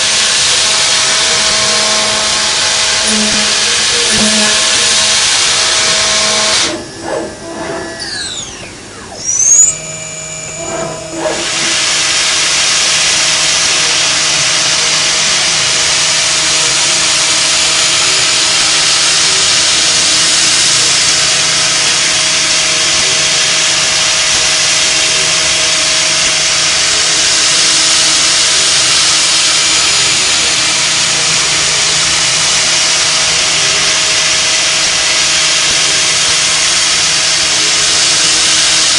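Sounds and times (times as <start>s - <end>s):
milling machine running: 0.0s - 38.9s.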